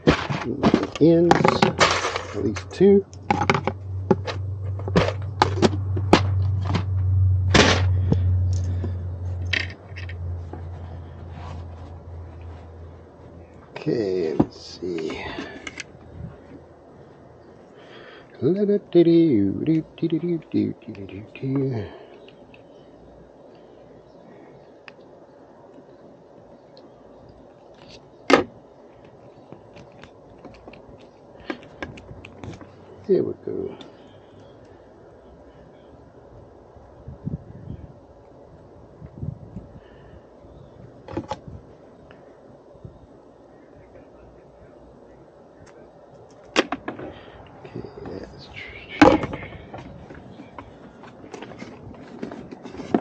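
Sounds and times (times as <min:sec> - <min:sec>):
steady low hum: 0:00.0 - 0:53.0
light handling ticks: 0:28.9 - 0:32.8.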